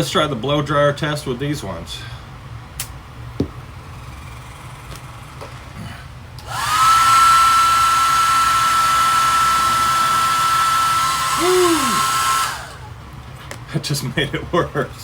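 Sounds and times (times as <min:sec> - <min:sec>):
blow dryer whine and rushing air: 0:05.6 - 0:13.0.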